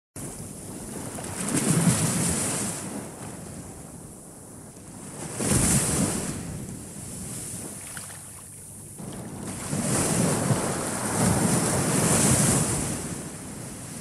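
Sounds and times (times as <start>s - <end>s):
small waves breaking on beach: 5.1s - 14.0s.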